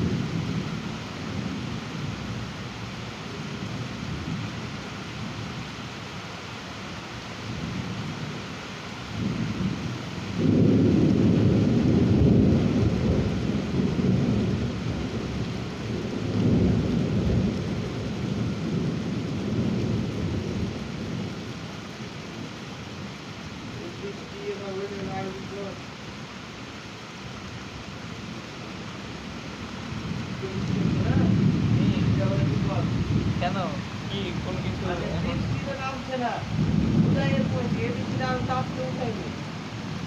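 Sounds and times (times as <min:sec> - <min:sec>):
thunder rumbling: 0:00.0 - 0:05.6, 0:09.1 - 0:22.4, 0:29.7 - 0:40.0
steady rain: 0:00.0 - 0:40.0.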